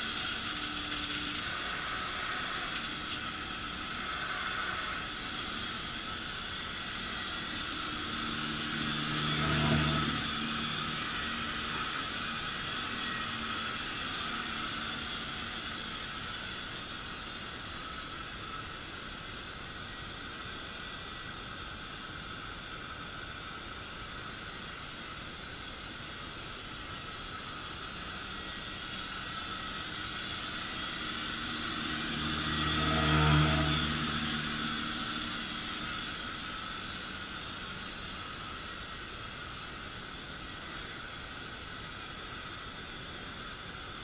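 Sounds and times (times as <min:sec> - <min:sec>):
vacuum cleaner running: 0:00.0 - 0:16.0.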